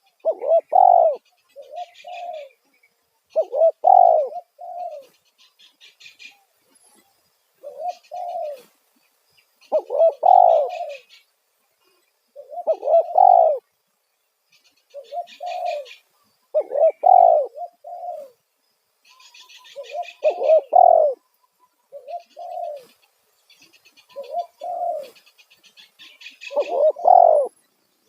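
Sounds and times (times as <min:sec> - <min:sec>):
dove cooing: 0:00.0 - 0:02.6, 0:03.3 - 0:05.2, 0:07.6 - 0:08.7, 0:09.6 - 0:11.2, 0:12.3 - 0:13.7, 0:14.9 - 0:18.4, 0:19.1 - 0:21.2, 0:21.9 - 0:23.0, 0:24.0 - 0:27.6.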